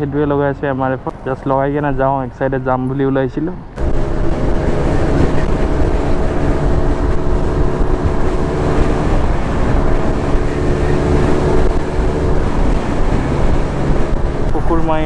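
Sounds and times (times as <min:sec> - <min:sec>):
motorcycle engine running: 0:03.8 - 0:15.0.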